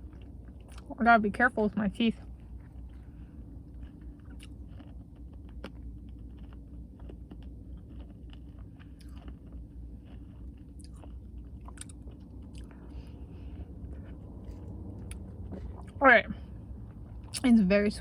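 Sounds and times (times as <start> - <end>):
person chewing crunchy ice cream: 0.0 - 1.0, 1.9 - 17.5
steady low hum: 0.0 - 18.0.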